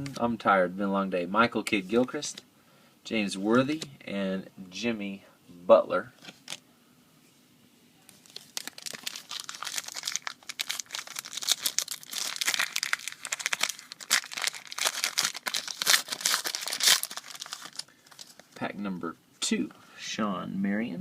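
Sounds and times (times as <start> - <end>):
wrapper tearing and crinkling: 8.1 - 18.6.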